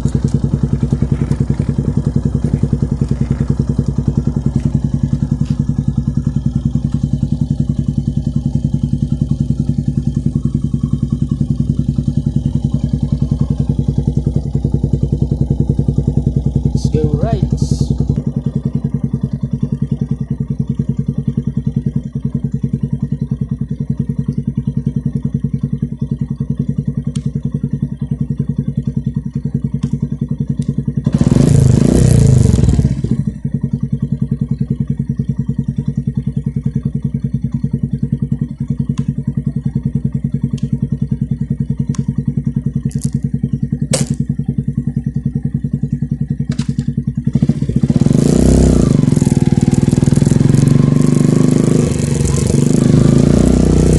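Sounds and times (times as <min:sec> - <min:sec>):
motorcycle engine idling: 0:00.0 - 0:53.9
engine revving: 0:30.6 - 0:33.5, 0:46.5 - 0:53.9.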